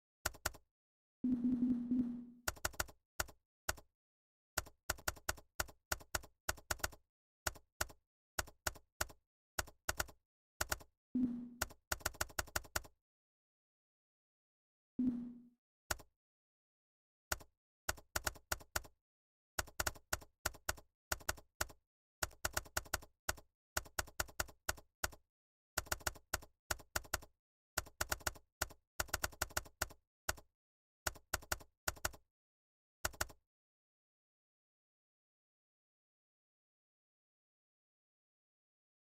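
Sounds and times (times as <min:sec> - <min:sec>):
computer keyboard typing: 0:00.2 - 0:00.6, 0:01.6 - 0:03.9, 0:04.6 - 0:12.9, 0:17.3 - 0:19.0, 0:19.6 - 0:25.2, 0:25.8 - 0:30.5, 0:31.1 - 0:32.2, 0:33.0 - 0:33.4.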